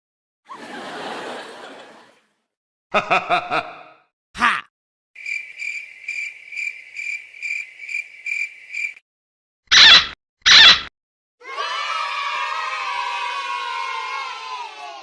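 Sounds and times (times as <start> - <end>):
cricket chirping: 5.2 - 9.0.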